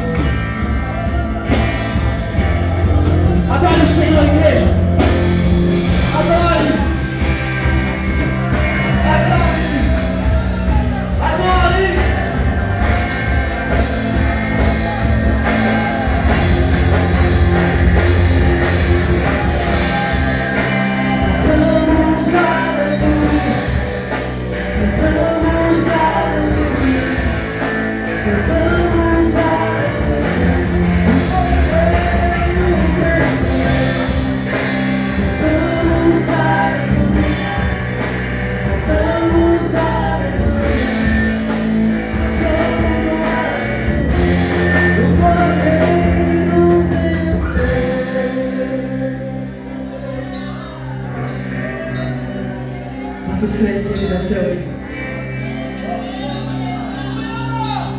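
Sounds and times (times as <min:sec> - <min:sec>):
rock band playing: 0:00.0 - 0:57.9
people singing: 0:11.9 - 0:53.2.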